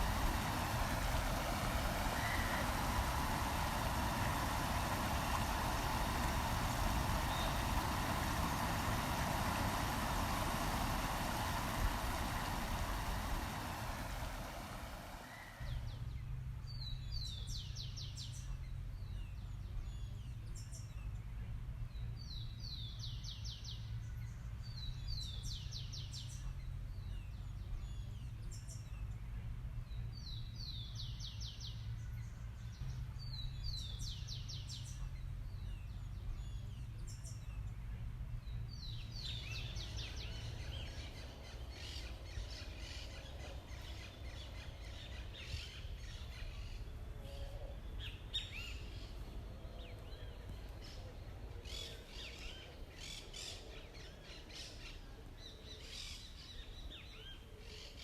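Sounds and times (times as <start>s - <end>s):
steady low rumble: 0.0s - 23.0s, 31.9s - 53.1s.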